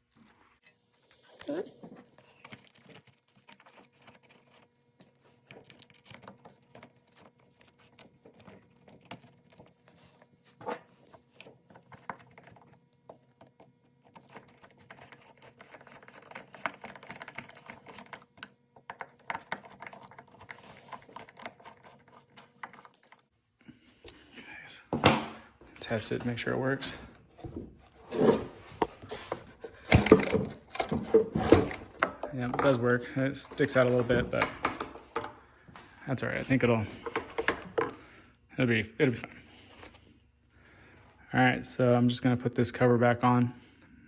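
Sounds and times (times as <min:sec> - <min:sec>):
plastic parts clicking and tapping: 0:11.4 - 0:23.3, 0:28.8 - 0:35.4, 0:36.4 - 0:38.0.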